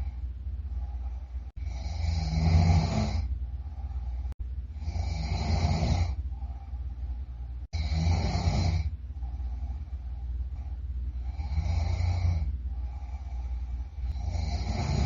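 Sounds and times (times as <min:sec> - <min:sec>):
quiet breathing: 0:00.0 - 0:15.0
person snoring loudly: 0:01.6 - 0:03.3, 0:04.8 - 0:06.2, 0:07.7 - 0:08.9, 0:11.2 - 0:15.0.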